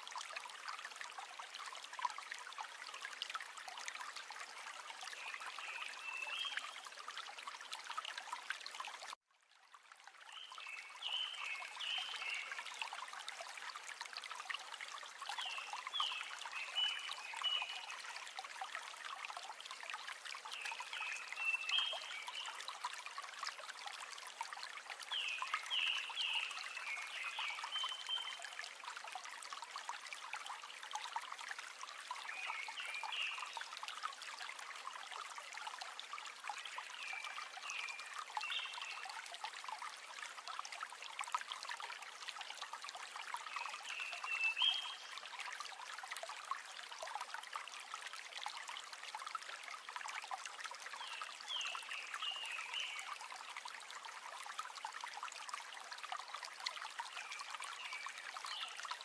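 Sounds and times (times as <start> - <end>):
river water running: 0.0 - 59.0.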